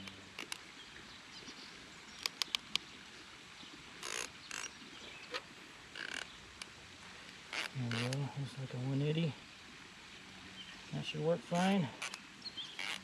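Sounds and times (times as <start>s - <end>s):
plastic sprinkler head clicks: 2.2s - 2.8s.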